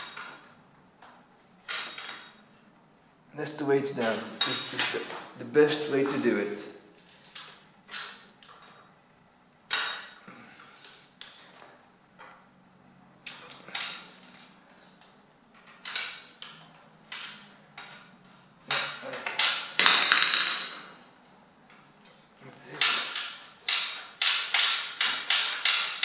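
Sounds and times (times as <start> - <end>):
metal bicycle parts clanking: 0.0 - 2.7, 3.9 - 5.2, 7.0 - 8.9, 9.7 - 12.3, 13.2 - 21.0, 22.0 - 26.0.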